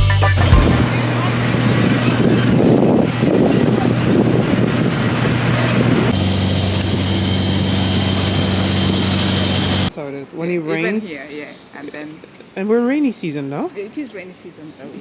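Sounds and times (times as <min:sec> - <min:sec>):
vehicle engine droning: 0:00.0 - 0:09.9
road noise: 0:00.3 - 0:09.9.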